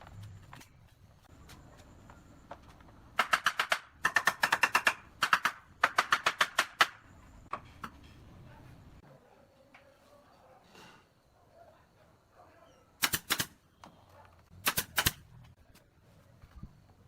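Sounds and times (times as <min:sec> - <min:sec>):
nail gun firing into wood: 0:03.2 - 0:07.0, 0:13.0 - 0:13.6, 0:14.6 - 0:15.2.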